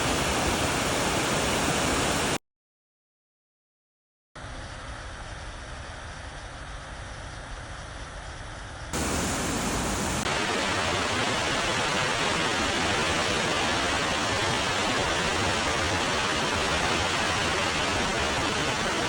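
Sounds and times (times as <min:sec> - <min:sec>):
waterfall roaring: 0:00.0 - 0:02.4, 0:09.0 - 0:19.0.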